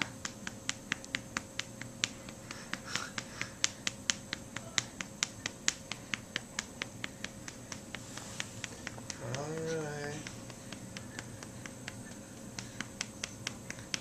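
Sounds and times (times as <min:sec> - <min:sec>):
hand patting baby's back: 0:00.0 - 0:14.0.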